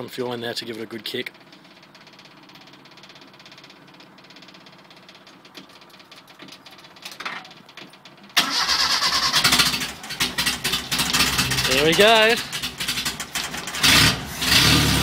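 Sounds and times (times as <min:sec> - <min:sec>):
engine cranking on starter: 0:08.4 - 0:15.0.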